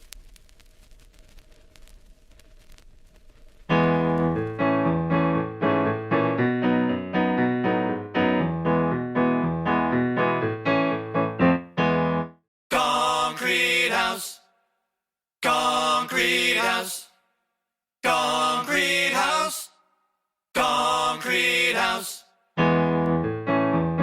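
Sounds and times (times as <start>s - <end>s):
faint hiss: 0.0s - 3.8s
lively piano playing: 3.7s - 12.4s, 22.6s - 24.0s.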